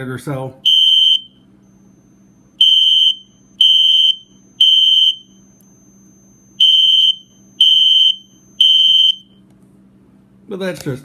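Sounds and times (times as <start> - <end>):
smoke alarm beeping: 0.6 - 9.4.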